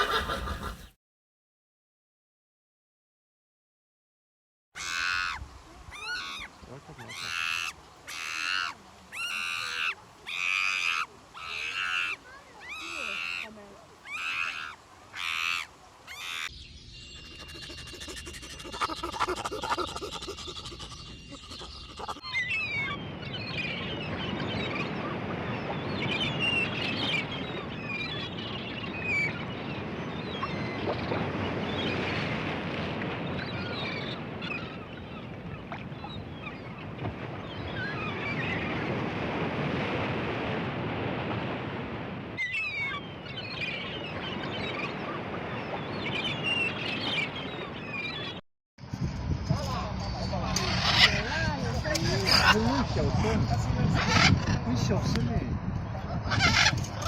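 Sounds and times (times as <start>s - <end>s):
bird calling: 0.0s - 0.9s, 4.8s - 32.1s, 42.4s - 48.4s
flock of birds chattering: 0.0s - 0.9s, 4.8s - 16.5s, 17.1s - 30.9s, 50.1s - 52.8s.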